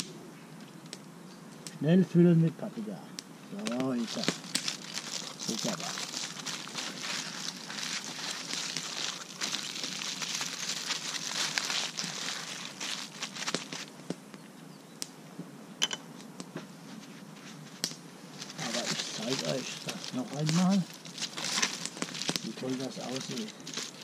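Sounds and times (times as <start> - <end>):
aluminium foil crinkling: 3.5 - 14.1, 18.4 - 24.0
foil clicks: 3.5 - 14.2, 17.8 - 24.0.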